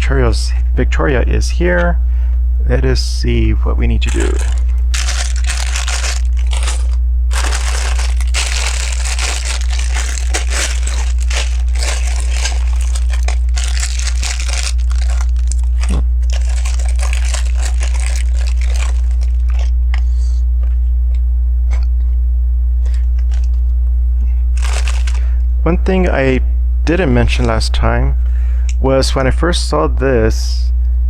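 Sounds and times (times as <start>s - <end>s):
steady low hum: 0.0s - 31.0s
plastic bricks rustling: 4.1s - 19.6s, 24.6s - 25.3s.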